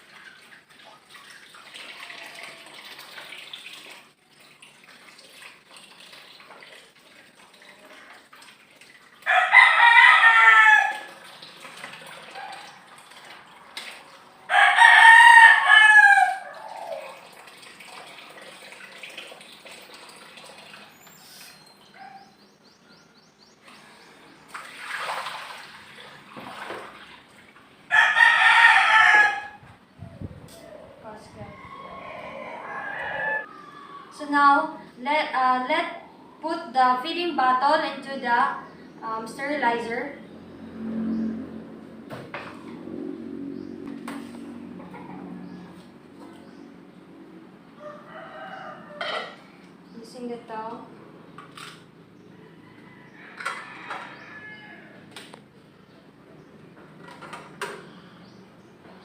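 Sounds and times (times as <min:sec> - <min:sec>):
faint water and handling noise: 0:00.0 - 0:14.8, 0:16.2 - 0:22.2, 0:23.6 - 0:27.9, 0:47.8 - 0:59.0
rooster crowing: 0:09.2 - 0:11.2, 0:14.5 - 0:17.1, 0:27.9 - 0:29.6, 0:30.6 - 0:34.2, 0:47.8 - 0:49.6, 0:52.3 - 0:55.2.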